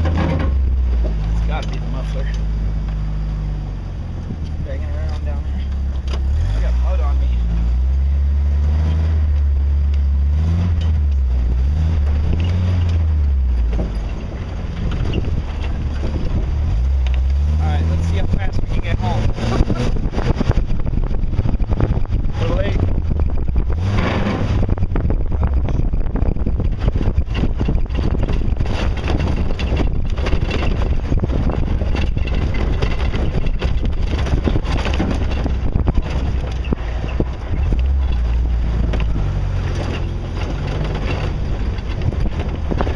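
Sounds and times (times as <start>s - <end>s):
knocks and rattles underneath: 0.0s - 3.1s, 10.7s - 42.9s
engine and exhaust running: 0.0s - 42.9s
wind buffeting microphone: 0.0s - 42.9s
body and suspension knocks: 26.8s - 42.9s.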